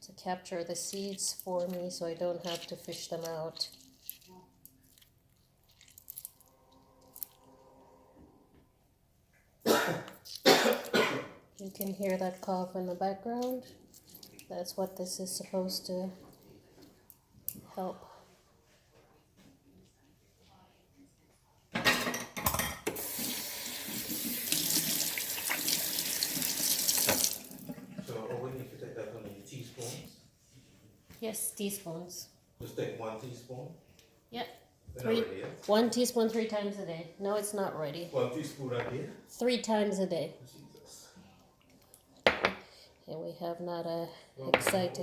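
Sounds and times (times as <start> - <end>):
background coughing: 9.6 - 11.4
person coughing loudly: 9.7 - 11.4
tap water running into sink: 22.9 - 27.9.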